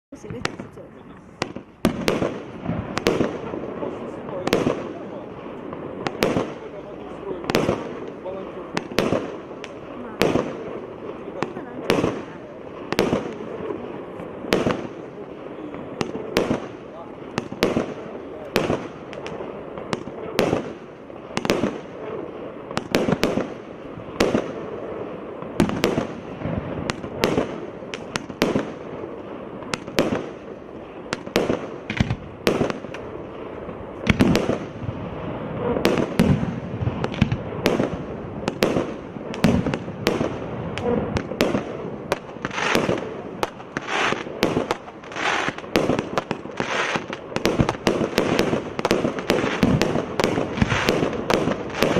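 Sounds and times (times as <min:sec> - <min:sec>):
fireworks crackle: 0:00.1 - 0:51.9
firework shells bursting: 0:15.9 - 0:51.9
firework launch thumps: 0:31.2 - 0:33.0.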